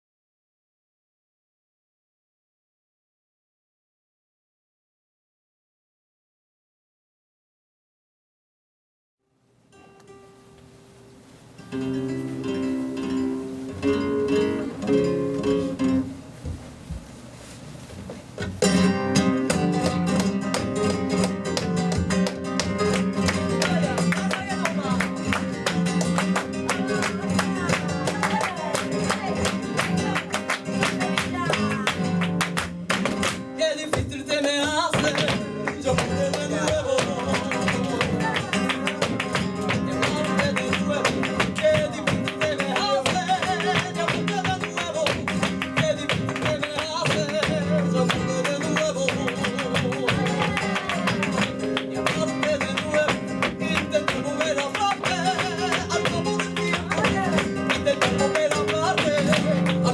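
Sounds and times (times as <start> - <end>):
flamenco guitar playing: 9.7 - 16.4, 18.1 - 59.9
person singing: 26.6 - 32.1, 33.6 - 59.9.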